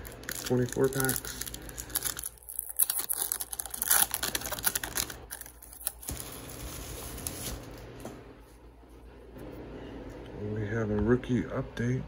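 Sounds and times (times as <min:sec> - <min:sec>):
foil pack crinkling: 0:00.0 - 0:07.9.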